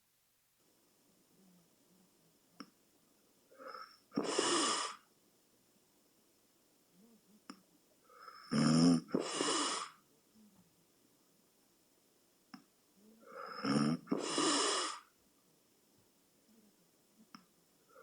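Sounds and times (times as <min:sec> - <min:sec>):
person snoring: 0:03.6 - 0:05.0, 0:08.2 - 0:10.0, 0:13.2 - 0:15.1.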